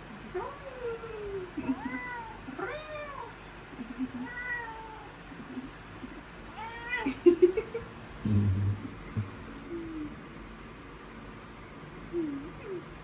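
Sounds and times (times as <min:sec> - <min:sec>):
cat meowing: 0:04.2 - 0:05.1, 0:06.5 - 0:07.3.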